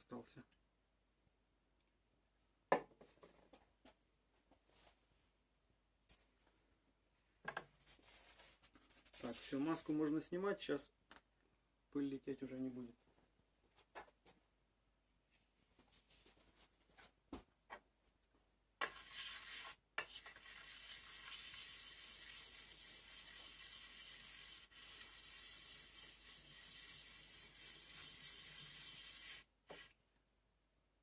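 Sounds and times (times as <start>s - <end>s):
sharpening stone gritty rubbing: 18.8s - 29.9s.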